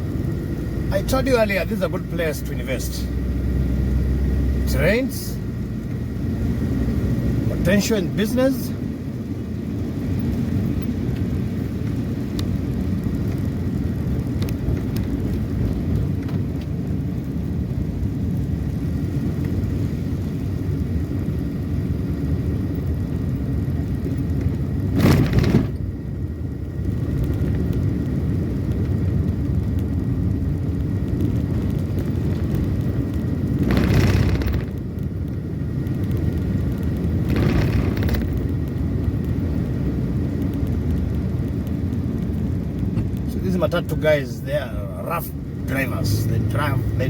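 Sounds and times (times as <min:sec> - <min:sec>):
car engine and road noise: 0:00.0 - 0:47.0
loud rushing noise: 0:25.0 - 0:25.8, 0:33.6 - 0:34.8, 0:37.2 - 0:38.4.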